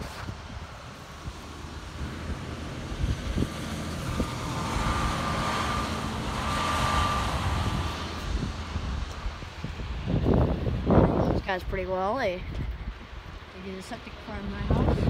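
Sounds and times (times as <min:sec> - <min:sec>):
tyres on wet road: 0:00.0 - 0:12.3, 0:12.9 - 0:15.0
truck driving past: 0:00.8 - 0:09.4.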